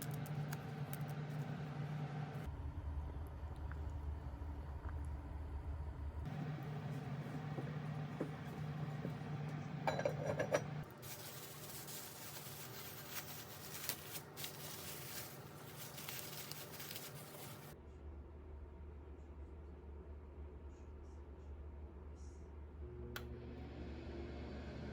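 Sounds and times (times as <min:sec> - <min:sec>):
low steady hum: 0:00.0 - 0:23.6
dishes clinking: 0:09.8 - 0:10.8.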